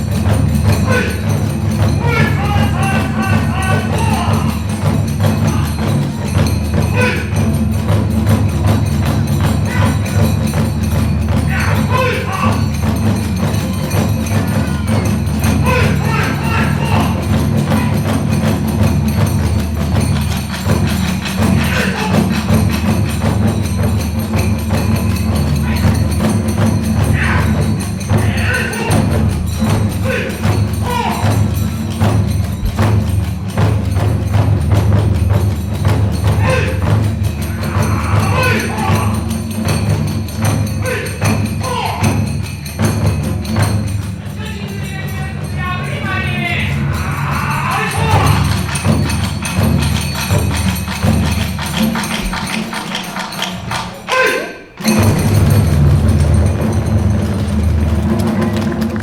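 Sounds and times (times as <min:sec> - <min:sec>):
large drum beating: 0:00.0 - 0:54.1, 0:54.8 - 0:59.0
hand cymbals clashing: 0:00.0 - 0:59.0
small drums keeping a beat: 0:00.0 - 0:59.0
bamboo flute phrases: 0:06.9 - 0:07.4, 0:11.5 - 0:12.8, 0:14.3 - 0:18.2, 0:27.1 - 0:31.5, 0:36.4 - 0:39.3, 0:40.8 - 0:42.2, 0:46.0 - 0:48.8, 0:54.0 - 0:55.0.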